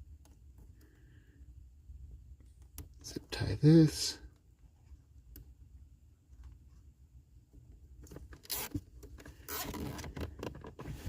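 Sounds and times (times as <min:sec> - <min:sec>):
zip tie rasping through ratchet: 0:08.4 - 0:08.8, 0:09.4 - 0:10.4.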